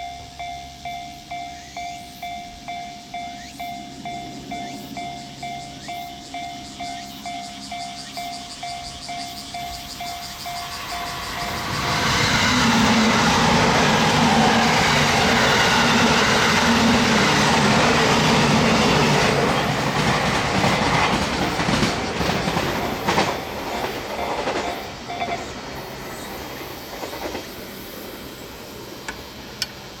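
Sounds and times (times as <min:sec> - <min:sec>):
train passing: 0:00.0 - 0:30.0
wheel clacks over rail joints: 0:06.7 - 0:25.6.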